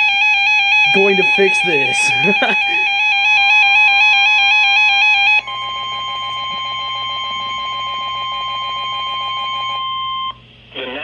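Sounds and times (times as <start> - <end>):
warbling alarm: 0.0 - 10.4
long steady alarm tone: 0.0 - 10.5.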